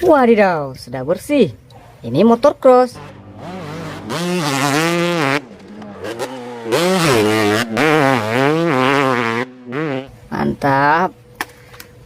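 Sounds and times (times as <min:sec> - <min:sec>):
toy motorcycle revving: 0:03.0 - 0:10.0.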